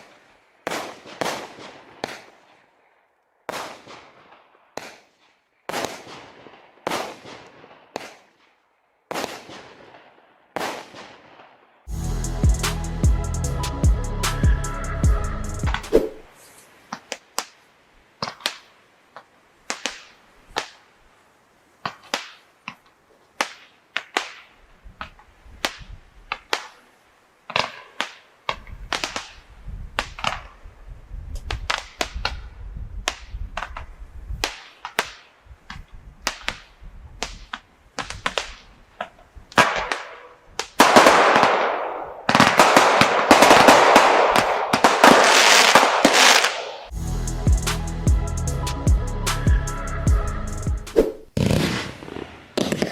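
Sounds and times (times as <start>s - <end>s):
fireworks cracking and banging: 0.0s - 2.7s, 3.5s - 8.5s, 9.1s - 11.5s, 27.5s - 29.4s, 39.5s - 47.0s, 50.9s - 52.9s.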